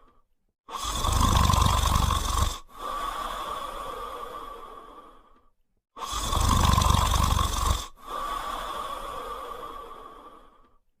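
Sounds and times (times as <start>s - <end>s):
dog snoring: 0.7s - 2.7s, 6.0s - 8.0s.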